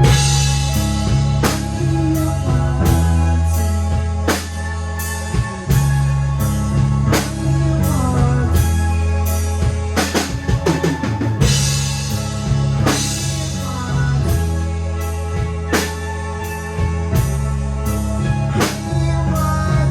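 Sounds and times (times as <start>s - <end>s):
drum fill: 0.0s - 4.7s, 9.6s - 14.6s
psychedelic rock band playing: 0.0s - 19.9s.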